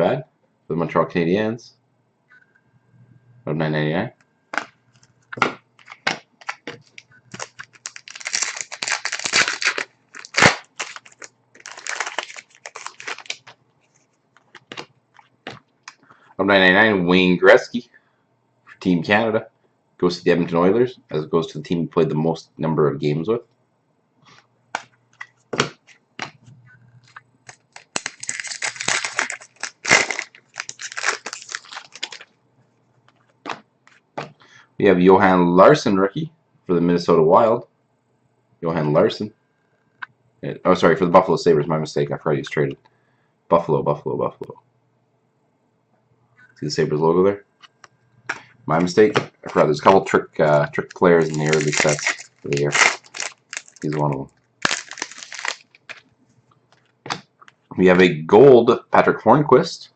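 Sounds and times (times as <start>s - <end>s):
packaging crinkling and rustling: 4.6s - 16.0s, 27.0s - 32.3s, 50.7s - 56.1s.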